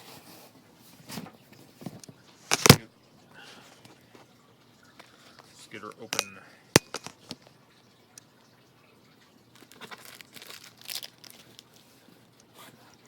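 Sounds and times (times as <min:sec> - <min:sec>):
packing material rustling and tearing: 0:09.6 - 0:11.9.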